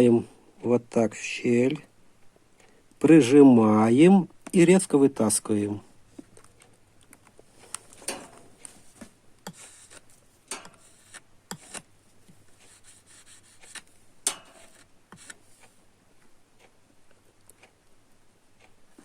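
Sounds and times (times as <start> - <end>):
clicks and scrapes of small parts: 6.2 - 15.7.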